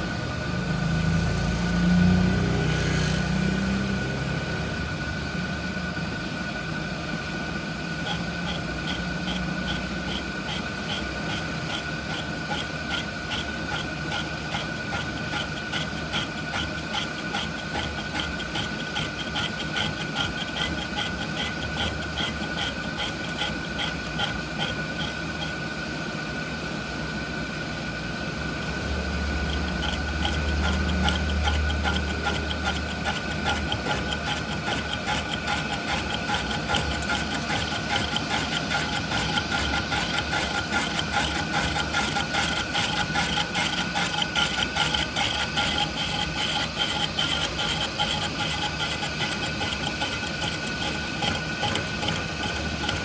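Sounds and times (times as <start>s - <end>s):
machine whining: 0.0s - 53.0s
fast rhythmic ticking: 8.0s - 25.5s, 29.2s - 53.0s.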